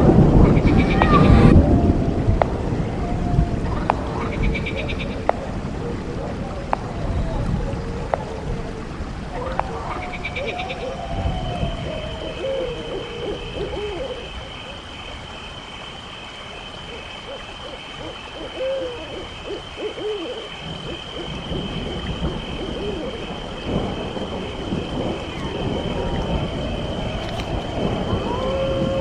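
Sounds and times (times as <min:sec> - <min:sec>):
low rumbling wind: 0:00.0 - 0:29.0
night insects chirring: 0:00.0 - 0:29.0
owl hooting: 0:09.4 - 0:15.3, 0:16.8 - 0:24.3.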